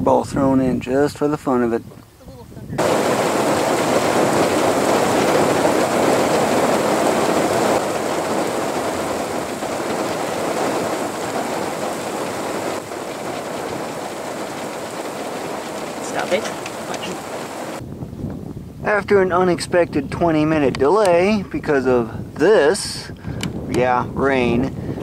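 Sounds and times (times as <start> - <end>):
heavy rain pouring: 2.8 - 17.8.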